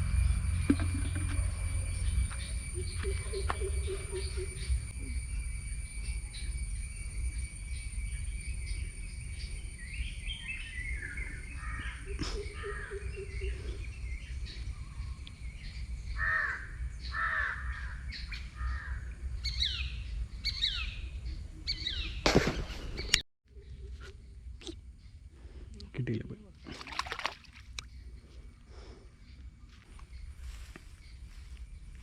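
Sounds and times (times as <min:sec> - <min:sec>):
birds calling: 0:00.0 - 0:05.0, 0:07.7 - 0:32.0
steady low rumble: 0:00.0 - 0:05.0.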